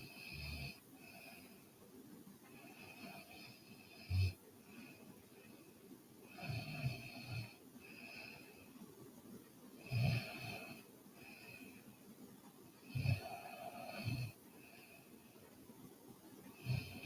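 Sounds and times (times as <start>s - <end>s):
woman snoring: 0.0s - 1.6s, 2.6s - 5.0s, 6.3s - 8.5s, 9.8s - 11.8s, 12.8s - 15.0s, 16.6s - 17.0s
quiet breathing: 0.0s - 17.0s.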